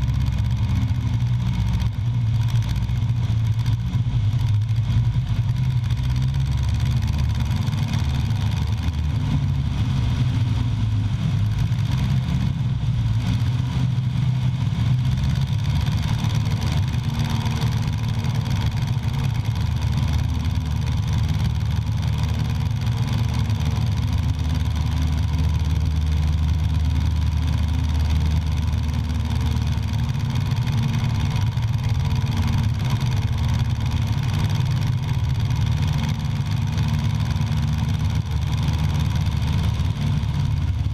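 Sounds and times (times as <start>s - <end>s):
engine running low drone: 0.0s - 40.9s.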